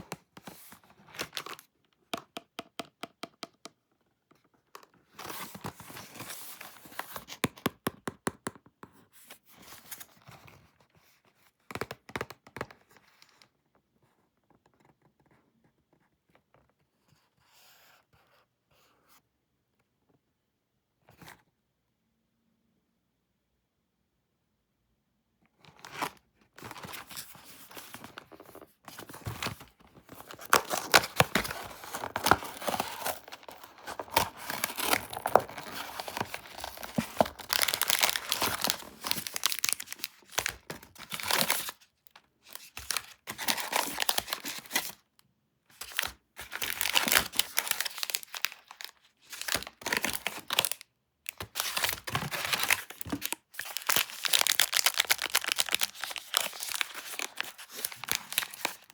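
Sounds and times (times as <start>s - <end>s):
wrapper tearing and crinkling: 30.2s - 41.8s, 45.9s - 50.8s, 51.4s - 58.9s.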